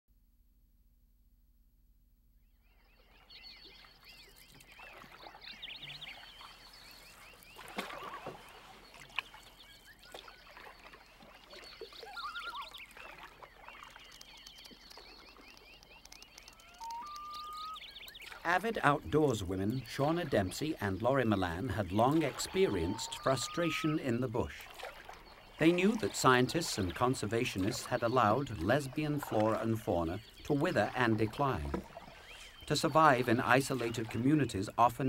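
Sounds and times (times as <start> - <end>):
high chirping animal calls: 9.4 - 24.5.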